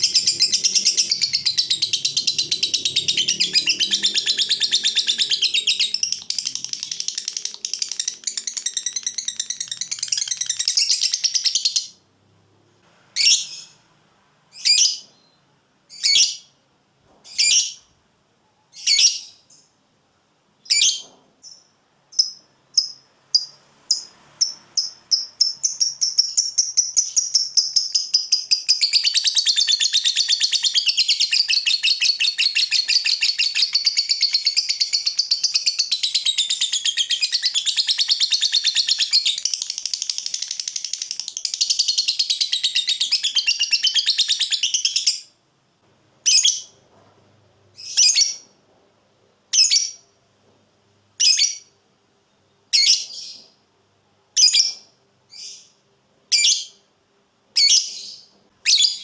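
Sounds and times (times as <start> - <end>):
bird chattering trill: 0.0 - 11.7
bird chirps: 0.0 - 12.0, 13.2 - 13.8, 20.6 - 45.3, 57.6 - 59.0.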